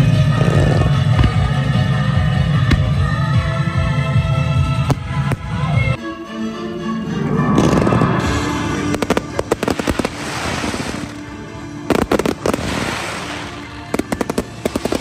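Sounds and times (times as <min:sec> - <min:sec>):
music: 0:00.0 - 0:15.0
fireworks crackling: 0:07.6 - 0:15.0.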